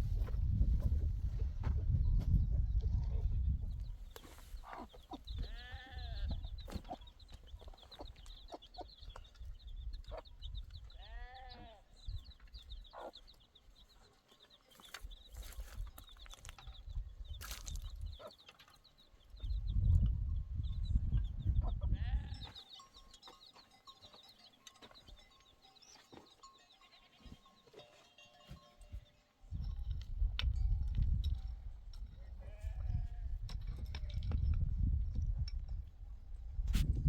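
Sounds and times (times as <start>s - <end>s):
animal bleating: 5.4s - 6.4s, 11.0s - 11.9s, 21.9s - 22.6s, 32.2s - 33.3s.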